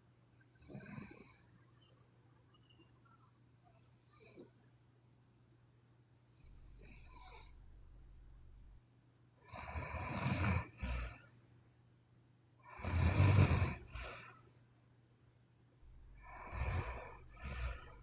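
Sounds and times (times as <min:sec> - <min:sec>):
woman snoring: 0:09.5 - 0:11.2, 0:12.7 - 0:14.2, 0:16.1 - 0:18.0.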